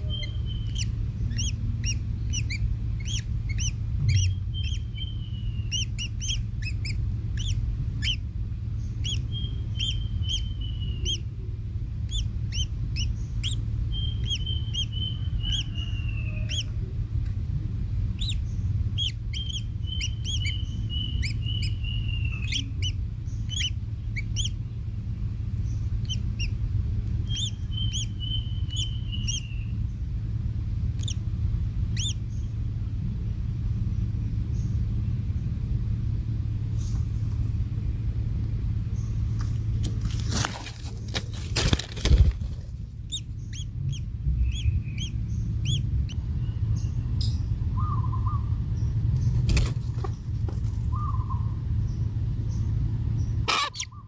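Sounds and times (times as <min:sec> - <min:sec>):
birds trilling calls: 0:00.0 - 0:35.7, 0:38.5 - 0:54.0
birds chirping: 0:00.0 - 0:54.0
steady low rumble: 0:00.0 - 0:54.0.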